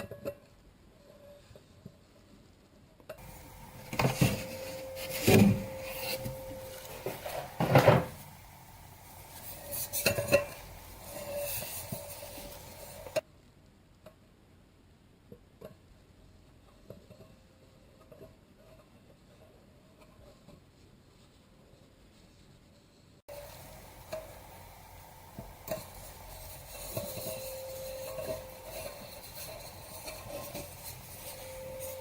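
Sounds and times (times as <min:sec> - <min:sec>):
hiss: 0:03.2 - 0:13.2, 0:23.3 - 0:32.0
metal pot clanking: 0:09.4 - 0:13.2.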